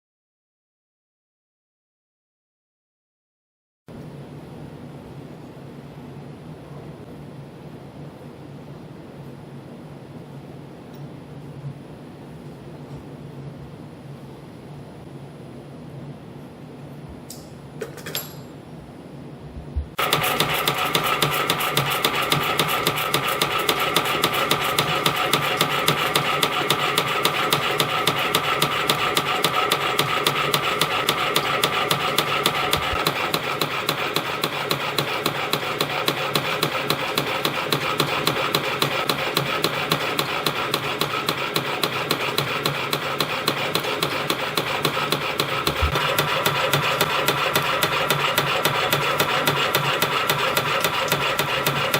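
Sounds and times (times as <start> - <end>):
machine hum: 18.8 - 51.9.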